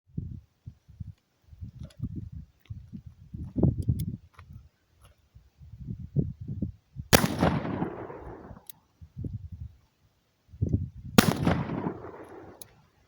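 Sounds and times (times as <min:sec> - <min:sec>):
revolver shots echoing: 0:07.2 - 0:08.6, 0:11.2 - 0:12.7.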